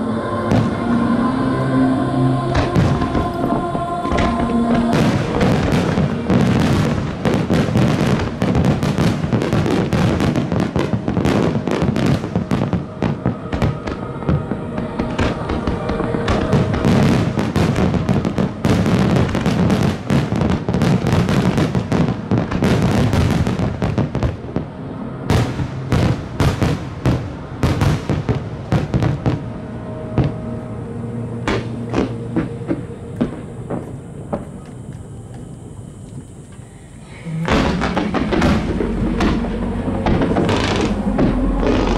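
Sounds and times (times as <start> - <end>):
music playing: 0.0 - 20.1, 37.2 - 41.9
fireworks bursting and crackling: 2.5 - 35.4, 37.2 - 41.9.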